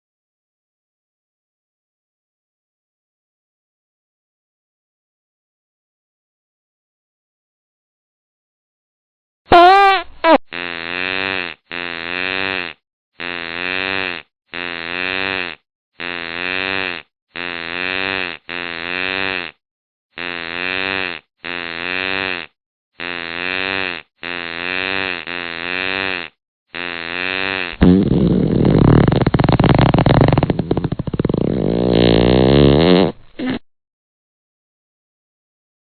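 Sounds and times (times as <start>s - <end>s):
fart sound effect: 9.5s - 19.6s, 20.2s - 33.6s.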